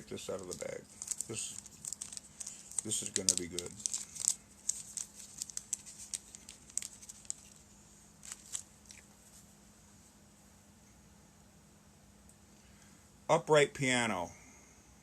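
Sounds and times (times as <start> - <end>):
plastic bag crinkling: 0.1 - 9.4.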